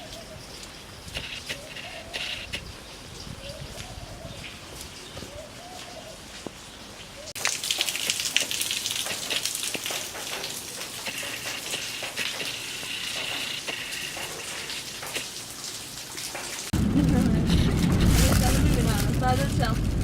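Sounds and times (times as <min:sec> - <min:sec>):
heavy rain pattering: 0:07.4 - 0:20.0.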